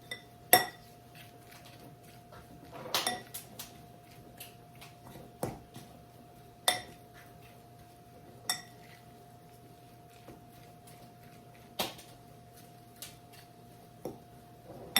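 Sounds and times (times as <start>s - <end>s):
metal spoon clinking on bowl: 0.0s - 0.9s, 6.7s - 7.0s, 8.4s - 9.0s
faint steady hum: 0.0s - 14.9s.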